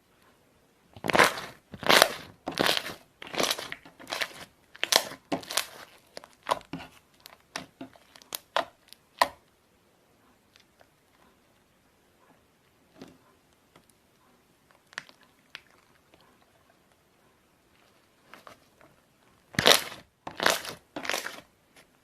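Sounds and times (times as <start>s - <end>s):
slime squishing: 0.9s - 9.5s, 14.6s - 22.0s.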